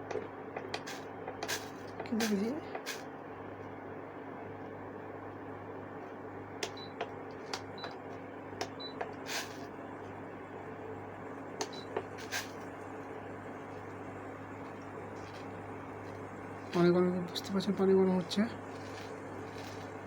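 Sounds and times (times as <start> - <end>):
induction cooker humming: 0.0 - 20.0
brief hisses from pot: 9.3 - 9.6, 12.2 - 12.6.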